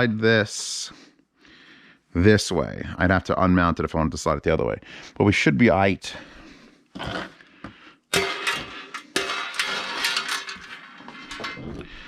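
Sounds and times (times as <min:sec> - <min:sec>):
metal rack hardware clinking: 0:08.1 - 0:11.9.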